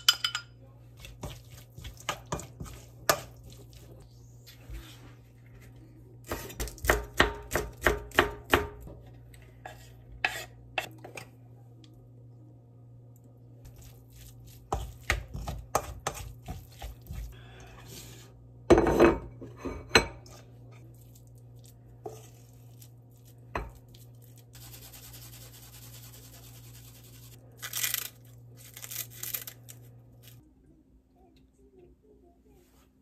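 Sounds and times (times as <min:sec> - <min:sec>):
dishes and utensils clattering: 0:00.0 - 0:00.6.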